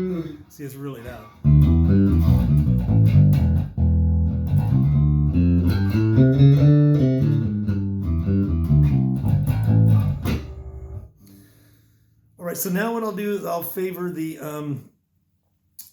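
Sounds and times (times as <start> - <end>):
bright electric bass notes: 1.4 - 11.1.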